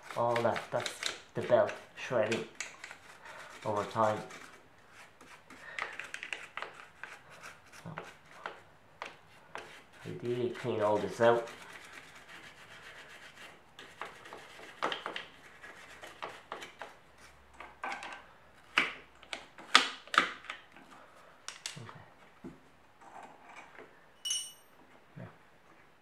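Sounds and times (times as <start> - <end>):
scrapes taps and clicks of parts: 0.0 - 4.5, 5.2 - 7.2, 7.9 - 9.9, 13.8 - 21.8
short metallic ring: 24.2 - 24.8.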